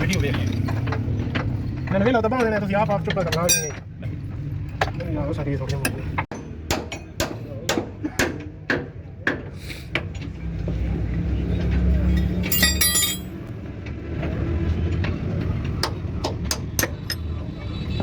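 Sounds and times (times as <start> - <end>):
metal clinks: 3.5 - 3.8, 12.2 - 13.4
sharp metal knocks: 12.4 - 13.4.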